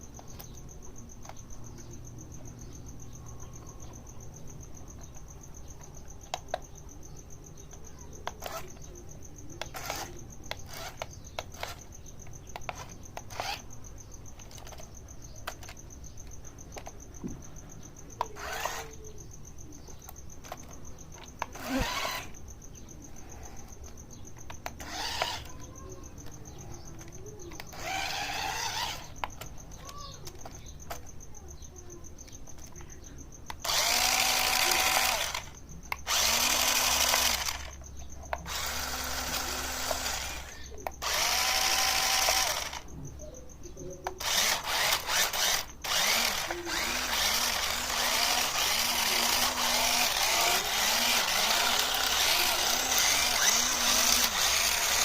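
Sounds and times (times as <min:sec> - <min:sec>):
rc car motors whirring: 0:07.5 - 0:17.3, 0:18.1 - 0:19.3, 0:20.0 - 0:31.2, 0:33.5 - 0:43.0, 0:44.0 - 0:55.0.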